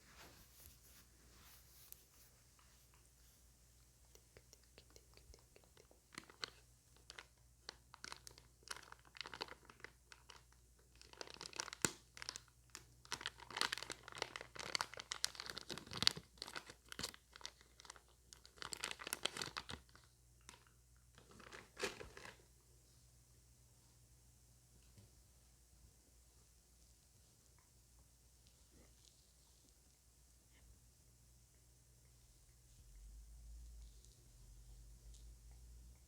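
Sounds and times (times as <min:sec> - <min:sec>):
crinkling and crackling clicks: 0:04.0 - 0:22.5.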